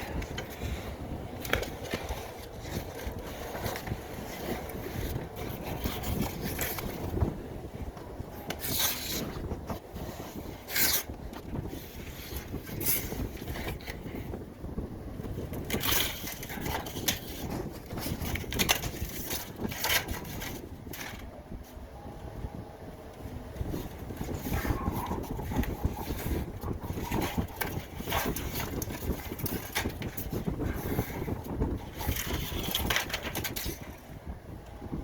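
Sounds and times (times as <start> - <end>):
air rushing through duct: 22.1 - 35.0.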